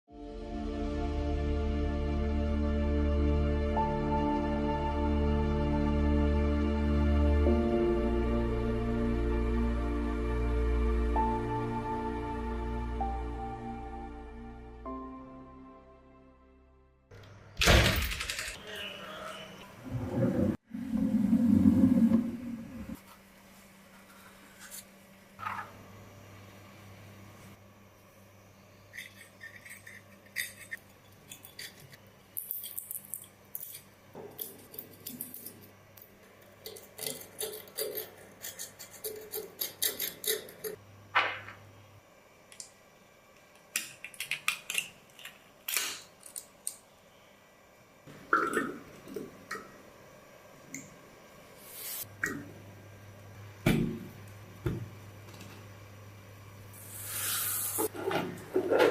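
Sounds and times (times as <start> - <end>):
small metal parts clinking: 28.9 - 35.7.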